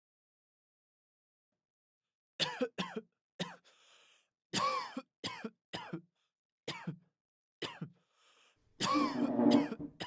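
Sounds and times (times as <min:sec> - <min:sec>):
person coughing: 0:08.8 - 0:09.9.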